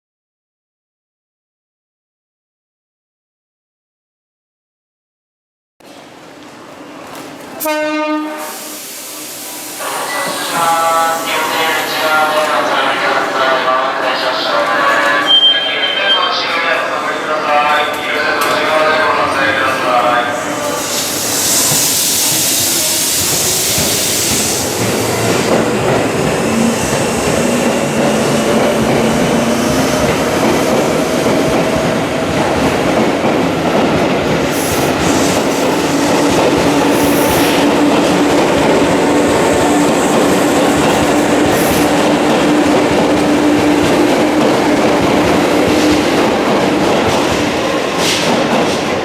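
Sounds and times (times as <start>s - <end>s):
train wheels clattering on rails: 20.9s - 49.0s.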